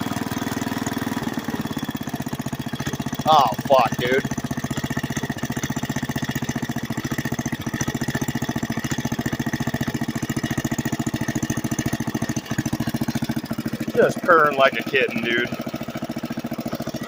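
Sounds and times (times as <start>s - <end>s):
lawn mower engine running: 0.0s - 17.0s.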